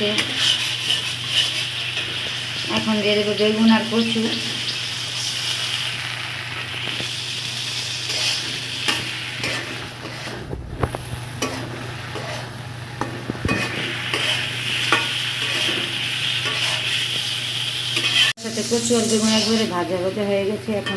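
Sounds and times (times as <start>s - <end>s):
spatula scraping pan: 0.0s - 2.6s, 7.9s - 19.7s
vegetables sizzling in hot oil: 0.0s - 20.9s.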